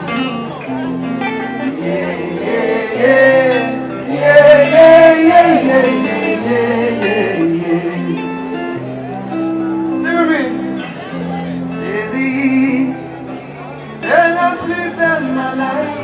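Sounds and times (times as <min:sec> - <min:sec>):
crowd singing along: 0:01.2 - 0:09.0, 0:11.2 - 0:16.0.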